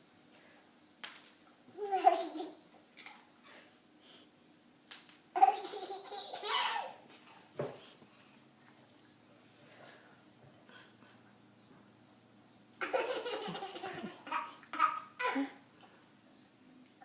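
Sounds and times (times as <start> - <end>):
small child laughing: 5.4 - 7.0, 12.8 - 15.6.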